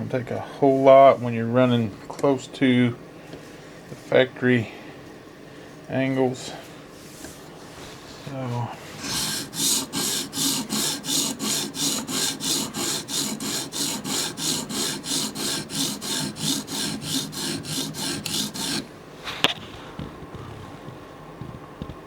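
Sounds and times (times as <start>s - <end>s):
sharpening stone rasping on knife: 9.0s - 18.9s.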